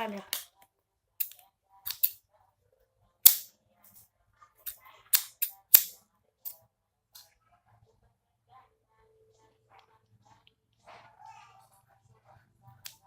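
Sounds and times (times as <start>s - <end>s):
scissors clicking: 4.7s - 6.6s.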